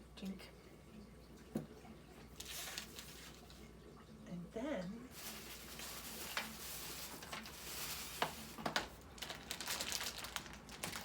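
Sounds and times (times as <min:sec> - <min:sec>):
rustling of items being handled: 0:02.3 - 0:03.7, 0:05.1 - 0:11.0.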